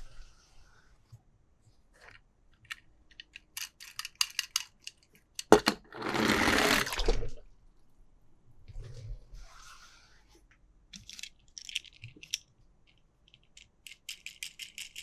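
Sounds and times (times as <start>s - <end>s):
plastic toys clicking and tapping: 2.6s - 7.0s, 10.9s - 15.0s
rustling scrape: 5.9s - 7.0s.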